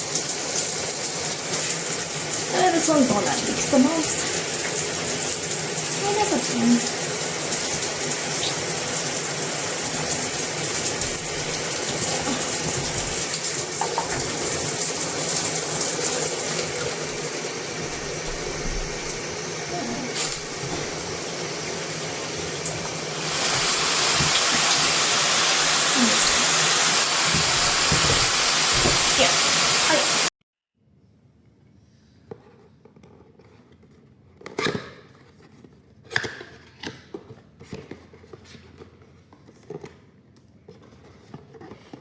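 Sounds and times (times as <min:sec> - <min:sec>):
shower head spraying water: 0:00.0 - 0:30.3.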